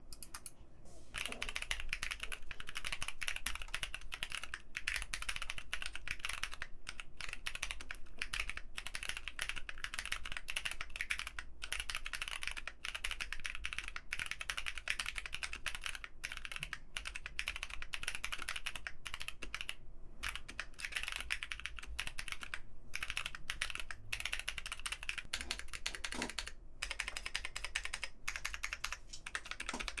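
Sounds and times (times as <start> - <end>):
mechanical keyboard typing: 0.1 - 0.5, 1.2 - 30.0.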